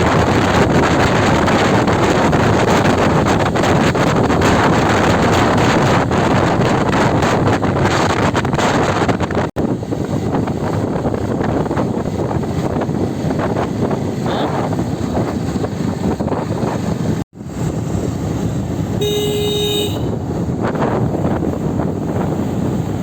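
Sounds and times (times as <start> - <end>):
wind rushing over microphone: 0.0 - 23.0
vehicle horn: 14.2 - 14.6, 19.0 - 20.2.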